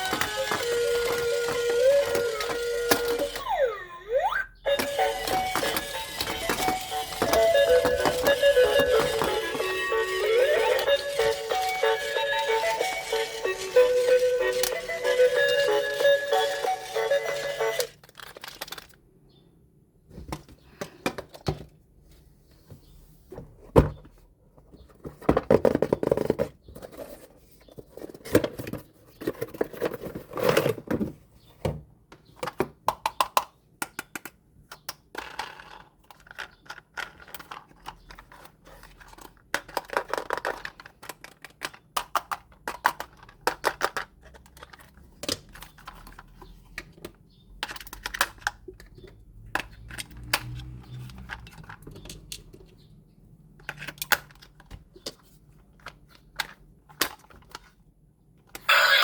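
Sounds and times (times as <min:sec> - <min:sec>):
toy pieces clicking and knocking: 0:00.0 - 0:19.0, 0:32.9 - 0:46.9, 0:47.6 - 0:52.5
packaging rustling and tearing: 0:17.9 - 0:19.0.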